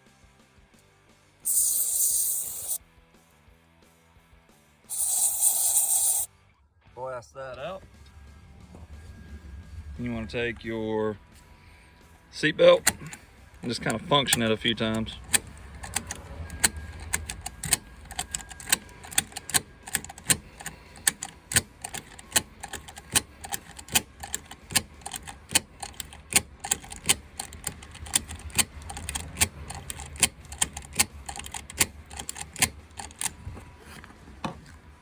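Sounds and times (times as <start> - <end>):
seat belt buckle clicking: 13.9 - 33.4.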